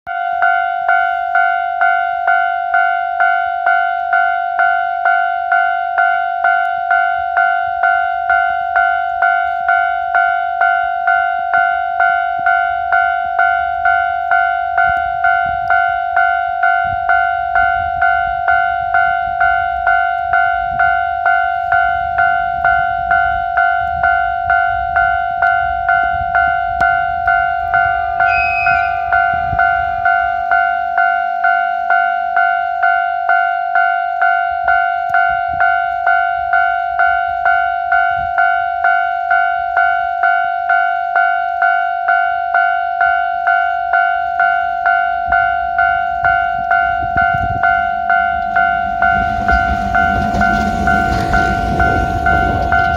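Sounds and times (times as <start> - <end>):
level crossing warning bell: 0.1 - 52.9
diesel locomotive rumble: 21.8 - 30.9, 45.8 - 52.9
second pitched sound: 28.3 - 30.0.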